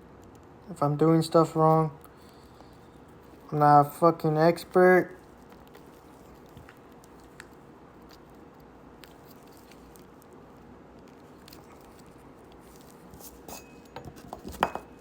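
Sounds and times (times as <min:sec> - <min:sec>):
faint steady hum: 0:00.0 - 0:15.0
wires clicking and rustling: 0:05.2 - 0:15.0.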